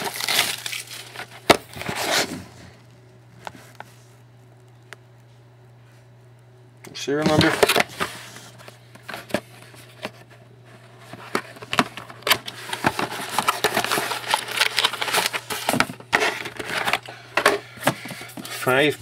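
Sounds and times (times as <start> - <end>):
card packaging crinkling: 0.0 - 2.4, 7.2 - 19.0
low electrical hum: 0.0 - 19.0.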